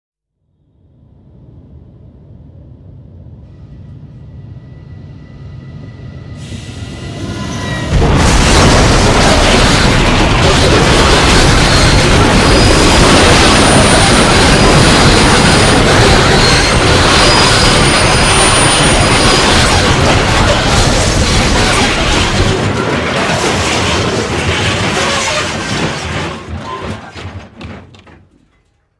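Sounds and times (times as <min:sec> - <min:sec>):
train rumbling: 0:00.8 - 0:28.9
loud train crash: 0:06.4 - 0:28.8.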